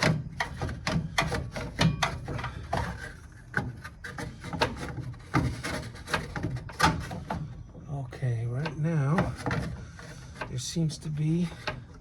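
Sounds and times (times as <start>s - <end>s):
fan shroud knocking and clicking: 0.0s - 7.6s
plastic scraping against parts: 0.0s - 12.0s.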